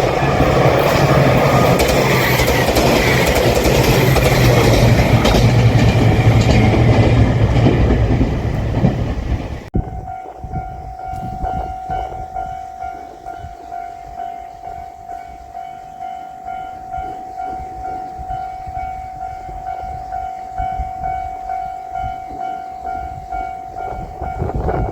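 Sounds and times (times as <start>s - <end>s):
train engine and wheel rumble: 0.0s - 24.9s
level crossing warning bell ringing: 9.8s - 24.9s.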